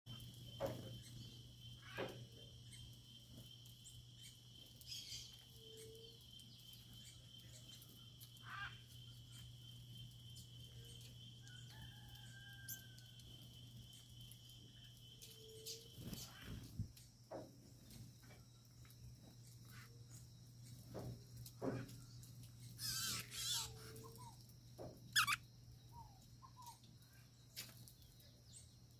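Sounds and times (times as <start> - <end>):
high insect drone: 0.1 - 26.3
bird chirps: 22.6 - 24.4, 25.1 - 26.8.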